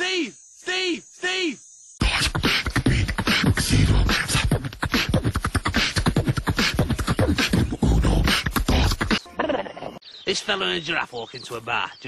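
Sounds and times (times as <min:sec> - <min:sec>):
man beatboxing: 0:02.0 - 0:09.2.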